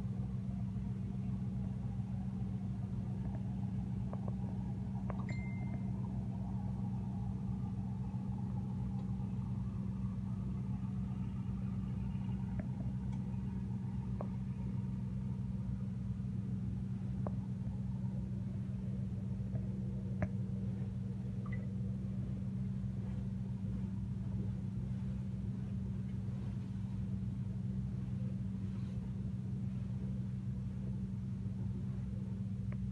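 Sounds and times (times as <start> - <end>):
boat engine humming: 0.0 - 32.9.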